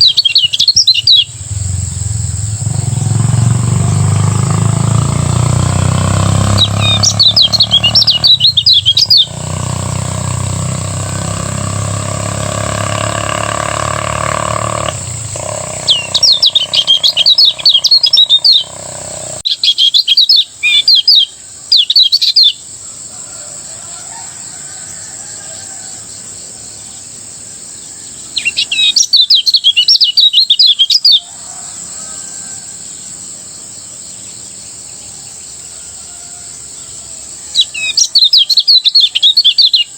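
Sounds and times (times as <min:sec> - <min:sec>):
bird chattering song: 0:00.0 - 0:22.7, 0:27.8 - 0:31.3, 0:37.5 - 0:39.9.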